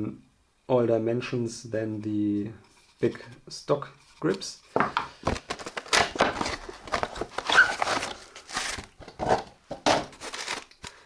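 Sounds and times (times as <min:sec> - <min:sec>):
plastic packaging rustling: 0:04.2 - 0:11.0.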